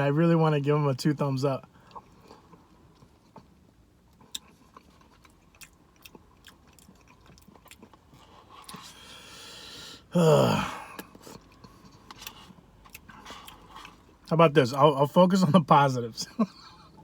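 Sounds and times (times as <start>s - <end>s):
chewing with lip smacks: 1.8s - 9.1s, 11.0s - 14.3s
long breath in: 8.9s - 10.1s
loud vocal groan: 10.2s - 10.9s.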